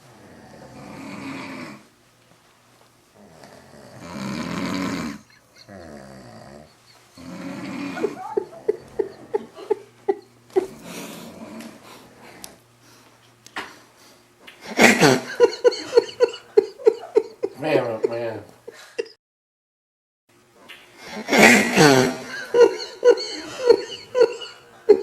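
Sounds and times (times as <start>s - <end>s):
woman snoring: 0.2s - 1.9s, 3.2s - 11.8s.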